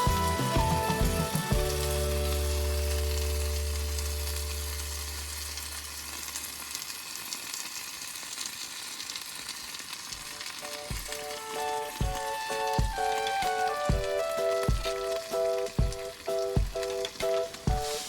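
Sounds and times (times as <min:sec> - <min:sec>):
low held music chord: 0:00.0 - 0:05.0
food sizzling in frying: 0:00.0 - 0:18.0.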